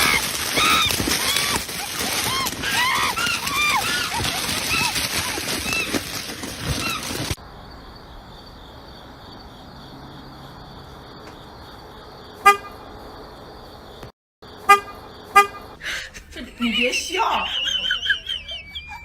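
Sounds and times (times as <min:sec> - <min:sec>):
short loud honks: 0:12.4 - 0:12.8, 0:14.7 - 0:15.7
loud noise with chirping tones: 0:16.8 - 0:19.0.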